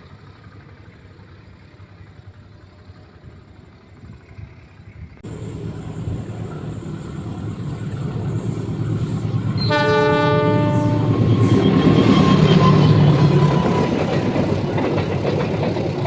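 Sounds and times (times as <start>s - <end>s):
train rumbling: 5.2s - 16.0s
train horn blast: 5.3s - 14.0s.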